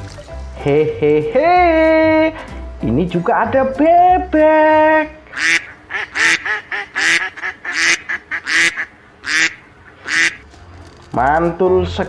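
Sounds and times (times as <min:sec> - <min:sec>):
duck quacking: 0:04.8 - 0:10.4.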